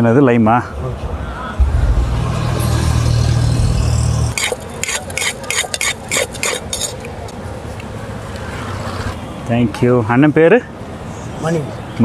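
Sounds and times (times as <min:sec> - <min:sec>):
low rumble: 0:00.7 - 0:04.8
spoon scraping round a bowl: 0:04.4 - 0:07.1.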